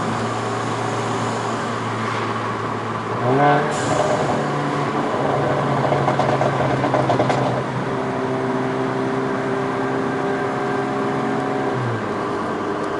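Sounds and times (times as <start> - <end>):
car engine and exhaust droning: 0.0 - 12.9
exhaust crack: 5.2 - 7.7.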